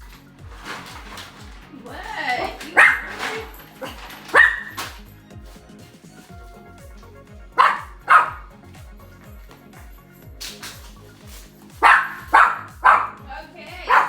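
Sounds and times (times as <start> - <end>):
background music: 0.0 - 14.0
small dog barking: 2.6 - 4.9, 7.5 - 8.6, 11.8 - 14.0.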